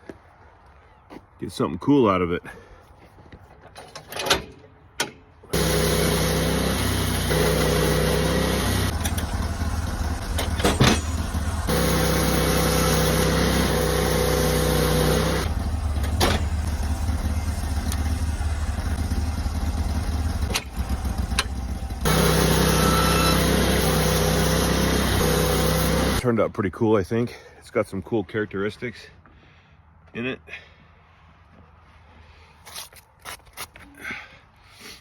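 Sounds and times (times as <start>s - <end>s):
sawmill engine sawing log: 5.5s - 26.2s.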